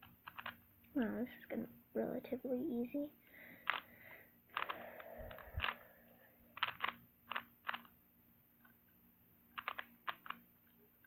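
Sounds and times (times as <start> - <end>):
puzzle cube clacking clicks: 0.0 - 0.6, 3.6 - 3.9, 4.5 - 5.8, 6.5 - 8.0, 9.5 - 10.4.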